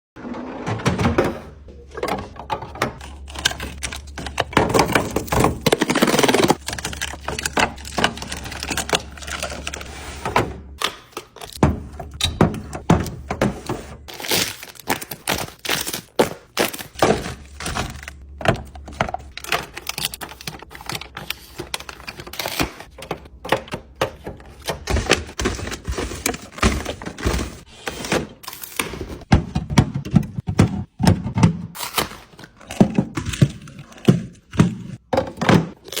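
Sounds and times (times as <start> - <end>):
wrapper crinkling: 14.1 - 18.2.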